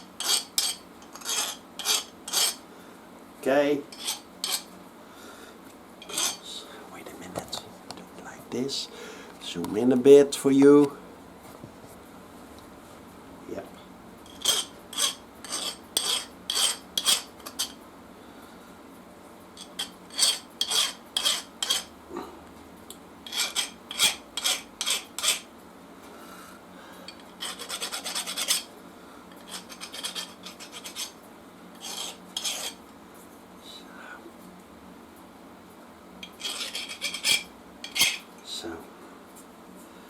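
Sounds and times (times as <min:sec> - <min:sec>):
hand file rasping on brake pad: 0:00.0 - 0:02.6, 0:03.9 - 0:04.7, 0:06.0 - 0:06.5, 0:14.3 - 0:17.8, 0:19.6 - 0:21.9, 0:23.2 - 0:25.5, 0:27.1 - 0:28.7, 0:29.4 - 0:31.2, 0:31.8 - 0:32.8, 0:36.3 - 0:38.2.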